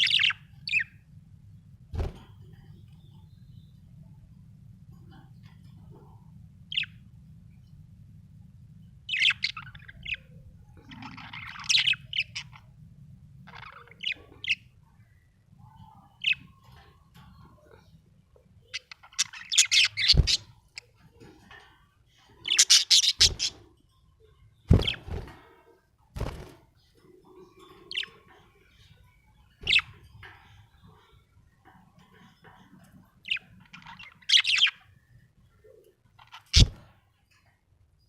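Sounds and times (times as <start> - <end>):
budgerigar chirping: 18.7 - 20.5, 22.5 - 23.6.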